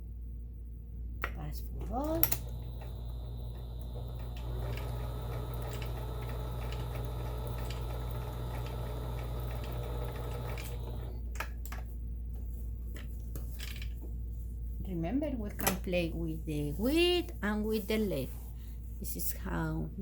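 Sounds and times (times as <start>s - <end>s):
sewing machine stitching: 1.8s - 11.2s.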